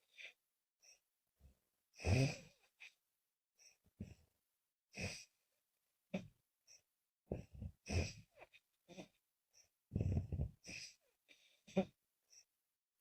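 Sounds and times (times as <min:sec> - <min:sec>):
woman snoring: 0:02.0 - 0:02.6.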